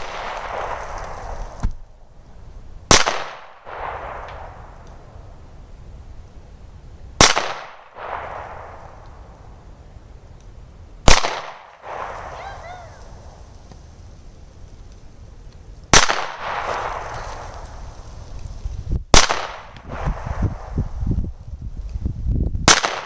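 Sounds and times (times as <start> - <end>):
loud gunshots: 2.9 - 4.2, 7.2 - 8.8, 11.0 - 12.8, 15.9 - 17.1, 19.2 - 20.3, 22.7 - 23.0
gunshot echo: 2.9 - 4.8, 7.2 - 9.0, 11.0 - 12.4, 15.9 - 17.6, 19.2 - 20.7, 22.6 - 23.0.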